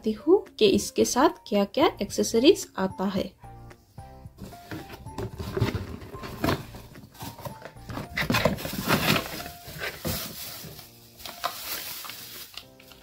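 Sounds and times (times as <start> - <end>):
soft background music: 0.0 - 13.0
plastic parts knocking and clattering: 4.4 - 10.4.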